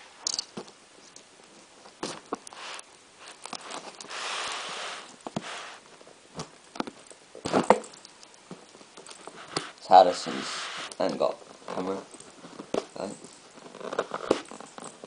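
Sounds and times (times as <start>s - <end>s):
clicks and knocks of cardboard: 6.4s - 9.8s, 12.5s - 15.0s.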